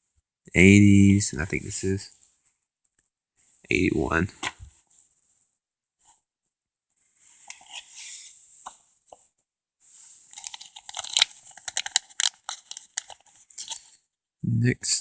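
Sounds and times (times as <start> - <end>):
comic books crinkling: 10.3 - 13.9.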